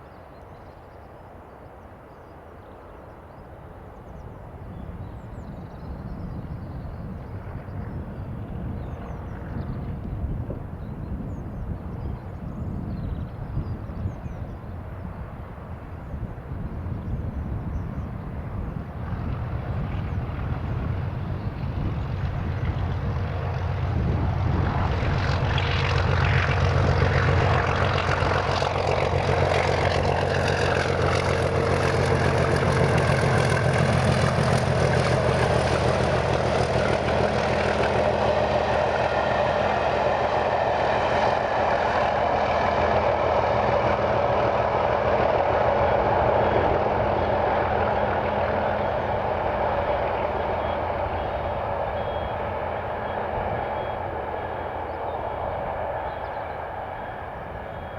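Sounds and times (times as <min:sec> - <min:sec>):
diesel locomotive working hard: 0:05.4 - 0:57.9.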